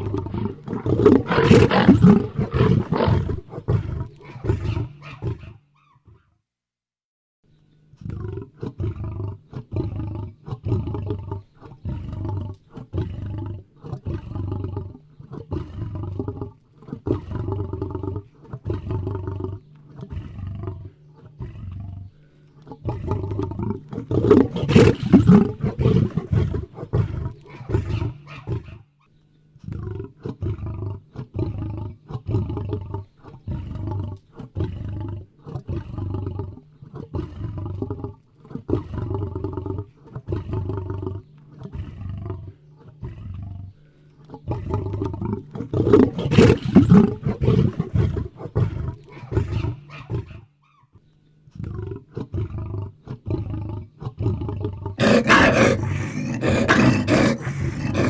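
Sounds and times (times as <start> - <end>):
lion grunting: 55.0 - 58.0
lion roaring: 55.0 - 58.0.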